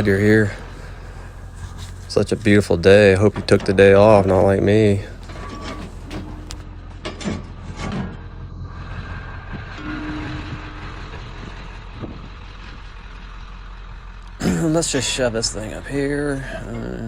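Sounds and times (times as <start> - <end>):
vehicle engine idling: 0.0 - 17.0
brief squeal-like tones: 9.5 - 12.2.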